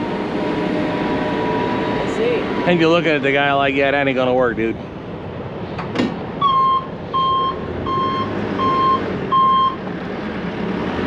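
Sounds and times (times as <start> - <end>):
diesel engine running: 0.0 - 11.0
backup alarm beeping: 6.4 - 9.8.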